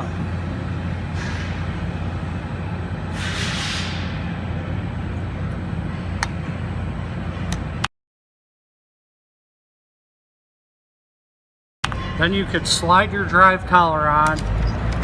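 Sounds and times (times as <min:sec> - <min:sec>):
low mechanical hum: 0:00.0 - 0:07.9, 0:11.8 - 0:15.0.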